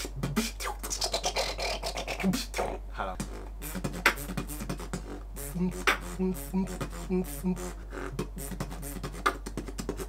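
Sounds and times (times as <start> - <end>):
beatboxing percussion clicks: 0.0 - 10.0
hummed bass notes: 2.0 - 10.0.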